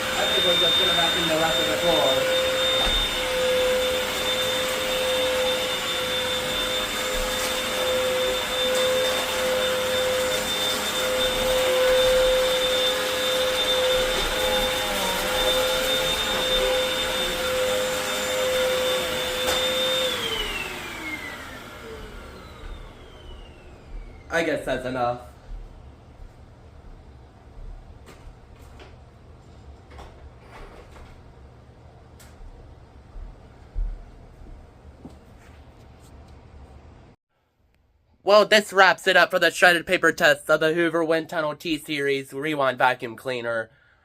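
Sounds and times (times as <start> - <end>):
vacuum motor spinning down: 0.0 - 24.8
vacuum cleaner running: 0.0 - 29.0.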